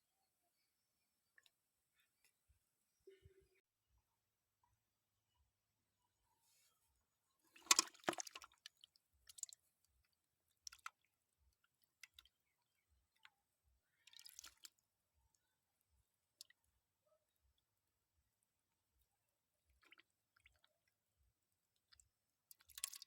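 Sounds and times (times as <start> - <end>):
wet splashing and squelching: 7.6 - 9.6, 14.0 - 14.8, 22.5 - 23.0.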